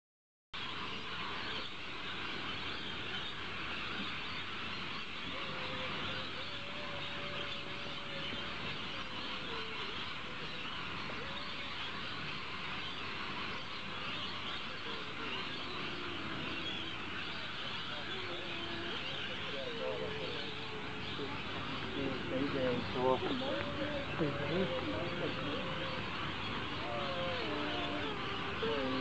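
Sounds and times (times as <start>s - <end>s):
birds chattering and squawking: 0.6s - 29.0s
faint wavering low call: 17.9s - 29.0s.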